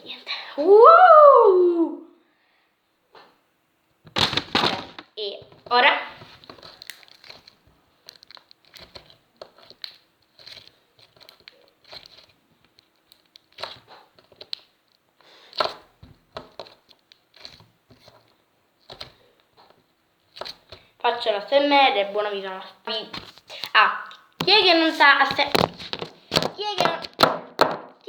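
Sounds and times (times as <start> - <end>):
hands squishing slime: 5.8 - 21.6
slime crackling and clicking: 6.6 - 15.0.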